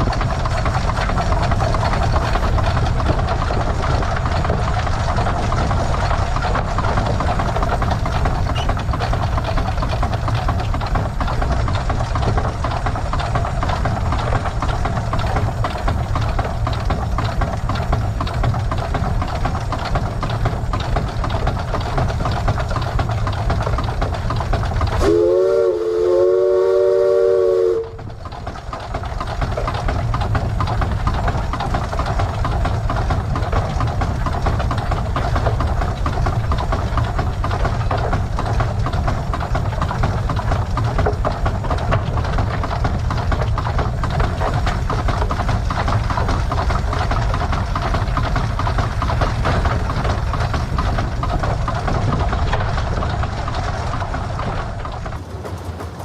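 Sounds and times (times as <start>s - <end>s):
steam engine running: 0.0s - 56.0s
steam whistle blasts: 25.0s - 28.0s.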